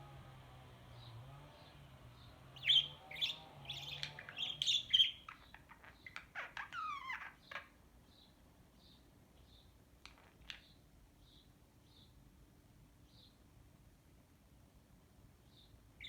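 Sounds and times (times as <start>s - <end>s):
budgerigar chirping and squawking: 2.6s - 7.8s.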